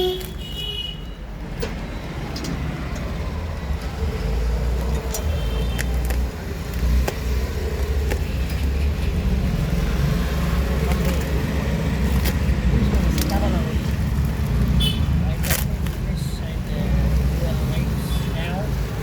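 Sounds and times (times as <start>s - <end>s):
road traffic rumble: 0.0s - 19.0s
clicks from handling packaging: 5.7s - 8.5s.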